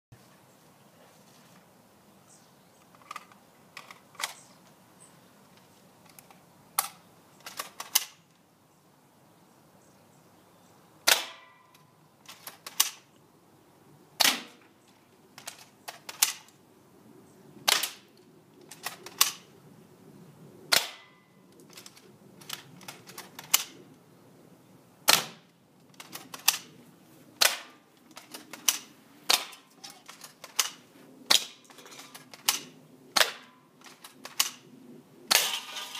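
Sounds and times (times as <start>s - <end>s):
airsoft rifle shots: 11.0s - 11.7s, 14.2s - 14.6s, 17.6s - 18.1s, 20.7s - 21.2s, 25.1s - 26.7s, 27.4s - 34.6s.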